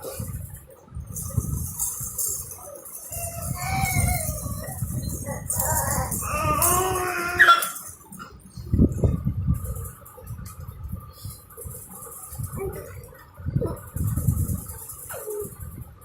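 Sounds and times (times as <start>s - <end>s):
rubbing and handling noise: 0.0s - 16.0s
baby squealing and babbling: 3.0s - 7.8s.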